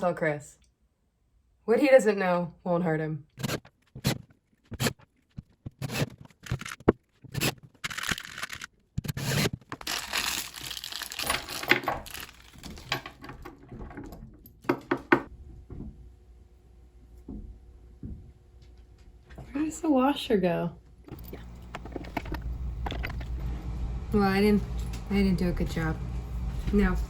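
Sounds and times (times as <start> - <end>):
packaging rustling and tearing: 5.8 - 13.2.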